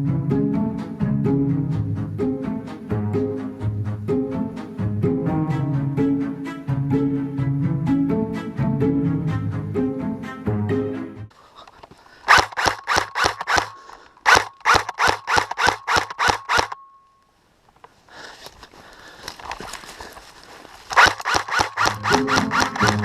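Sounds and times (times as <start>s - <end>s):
music: 0.0s - 11.3s, 22.0s - 23.0s
airsoft gun rapid shots: 12.3s - 16.8s, 20.9s - 23.0s.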